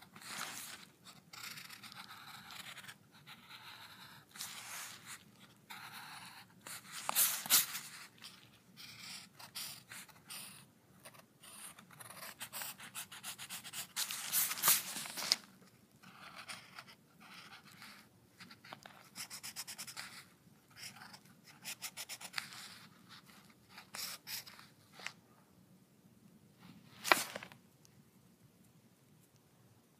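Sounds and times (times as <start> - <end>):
pencil scratching on paper: 0.0 - 15.1, 16.0 - 24.7.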